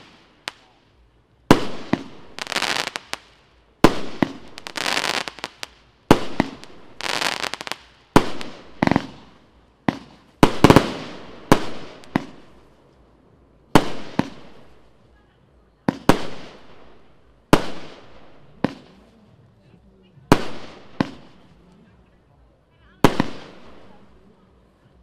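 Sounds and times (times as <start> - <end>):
firework bangs: 0.0 - 0.8, 1.4 - 12.8, 13.7 - 15.0, 15.9 - 19.1, 20.3 - 21.6, 23.0 - 24.2
firework crackle: 0.0 - 15.1, 15.9 - 19.1, 20.3 - 21.6, 23.0 - 25.0.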